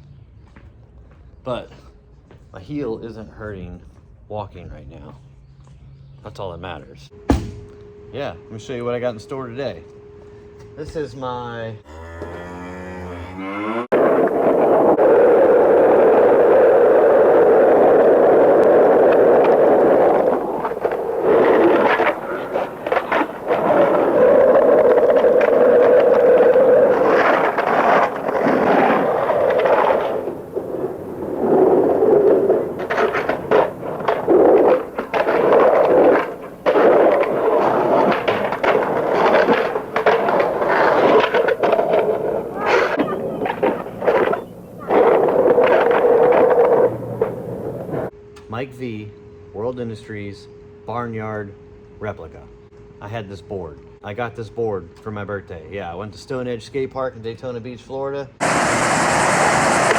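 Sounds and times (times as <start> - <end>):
moo-like lowing call: 11.8 - 14.2, 41.0 - 48.1
skateboard wheels rolling on pavement: 13.9 - 48.1, 58.4 - 59.9
steady rushing roar: 13.9 - 48.1, 58.4 - 59.9.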